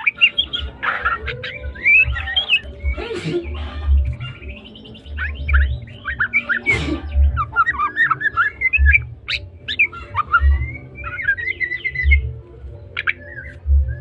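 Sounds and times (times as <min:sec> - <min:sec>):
bird whistling song: 0:00.0 - 0:14.0
low thuds: 0:13.6 - 0:14.0.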